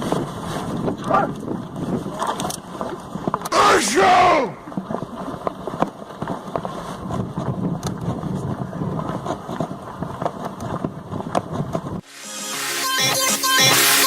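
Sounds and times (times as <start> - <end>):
wind on microphone: 0.0 - 3.4, 6.5 - 12.0
music: 12.0 - 14.0.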